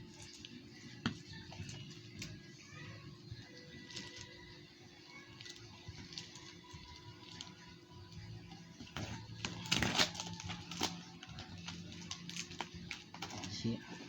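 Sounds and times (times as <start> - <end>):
faint background music: 0.0 - 14.0
plastic and tape rustling: 0.0 - 14.0.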